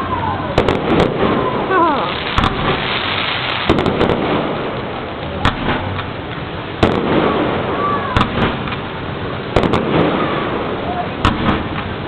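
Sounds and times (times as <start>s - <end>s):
continuous firework crackle: 0.0s - 12.0s
firework bangs: 0.0s - 12.0s.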